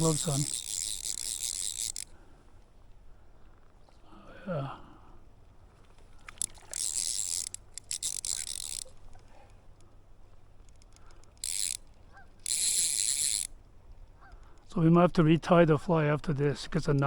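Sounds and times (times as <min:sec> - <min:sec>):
fly reel ratchet clicking: 0:00.0 - 0:02.2, 0:06.2 - 0:09.1, 0:10.6 - 0:13.7.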